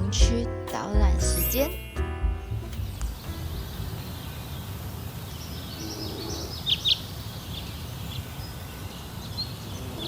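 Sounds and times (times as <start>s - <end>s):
birds chirping: 2.2s - 10.0s.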